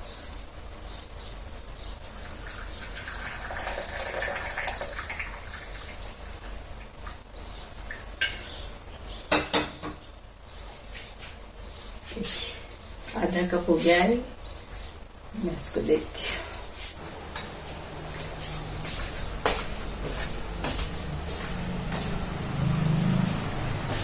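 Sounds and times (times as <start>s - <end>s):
liquid pouring into cup: 2.2s - 6.0s.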